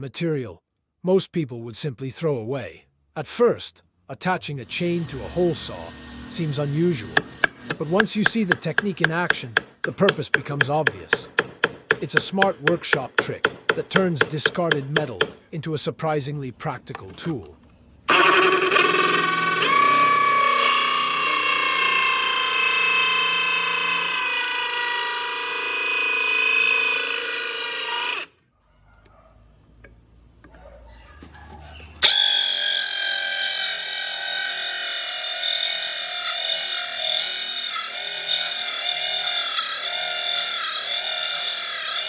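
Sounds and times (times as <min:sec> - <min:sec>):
power drill with hole saw whining: 0:04.6 - 0:15.4, 0:18.1 - 0:28.4, 0:32.0 - 0:42.0.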